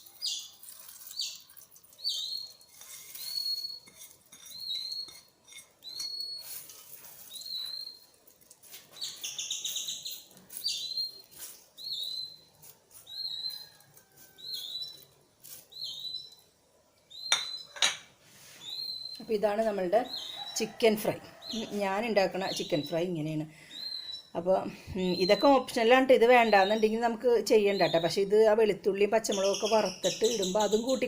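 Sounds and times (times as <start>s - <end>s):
bird chirping: 0.0s - 28.4s, 29.0s - 31.0s.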